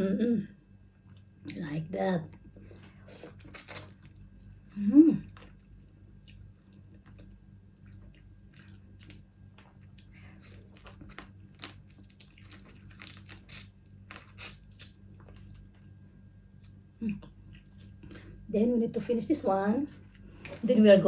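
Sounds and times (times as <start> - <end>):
chewing and crunching crab shell: 2.4 - 18.5.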